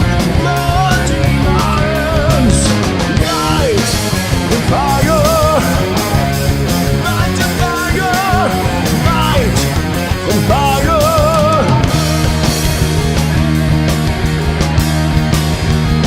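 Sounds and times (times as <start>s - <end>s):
distorted guitars and bass: 0.0s - 16.0s
steady drumbeat: 0.7s - 15.8s.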